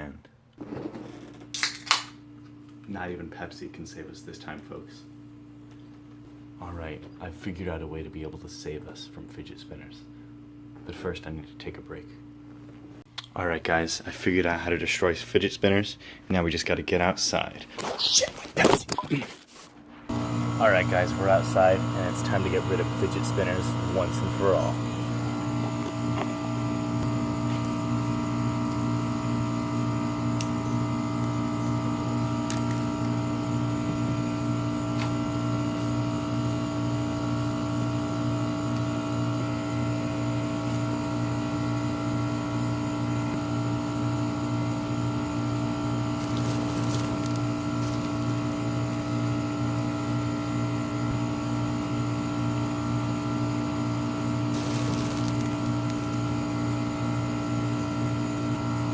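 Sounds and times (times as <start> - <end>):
engine running with low hum: 45.7 - 51.7, 54.3 - 58.9.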